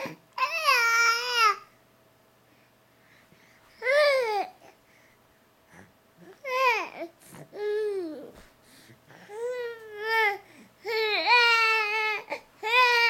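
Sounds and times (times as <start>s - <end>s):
baby babbling: 6.3s - 8.4s.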